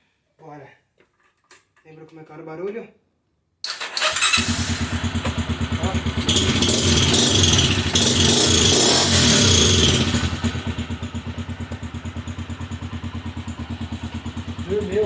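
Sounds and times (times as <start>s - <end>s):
motorcycle engine revving and idling: 3.7s - 15.0s.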